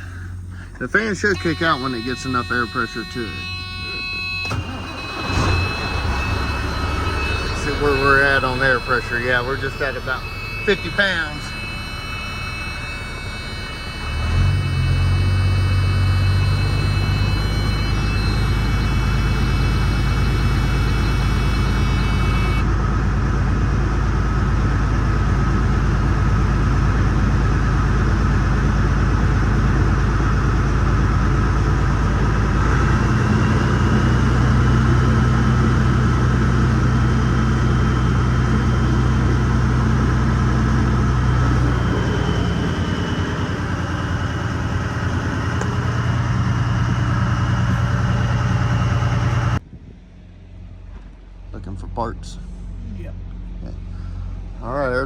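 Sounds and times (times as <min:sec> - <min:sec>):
diesel truck engine idling: 0:00.0 - 0:49.6, 0:50.3 - 0:55.0
engine fan: 0:00.0 - 0:55.0.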